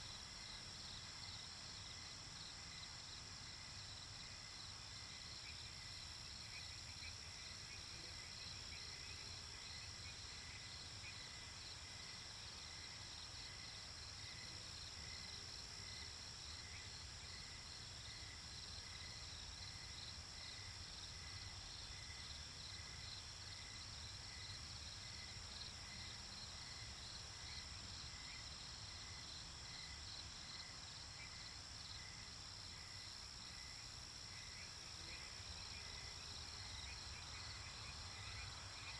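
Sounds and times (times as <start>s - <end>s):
insects chirping: 0.0s - 38.9s.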